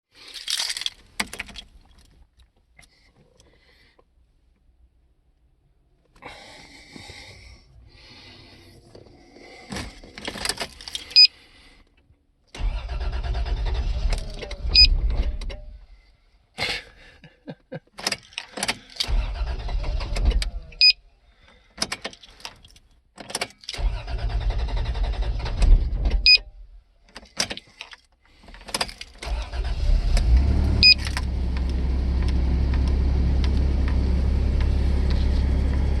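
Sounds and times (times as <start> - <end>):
car engine cranking: 0.3 - 2.1, 12.6 - 15.9, 18.0 - 36.0
car engine idling: 29.2 - 36.0.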